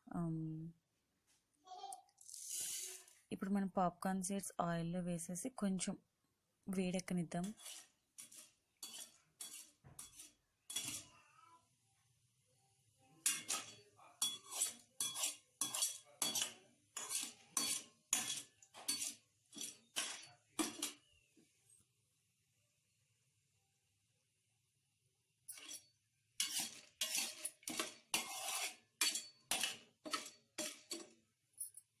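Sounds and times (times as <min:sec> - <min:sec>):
spoon scraping a pan: 0:02.3 - 0:03.1, 0:07.4 - 0:11.2, 0:13.2 - 0:21.1, 0:25.5 - 0:31.2.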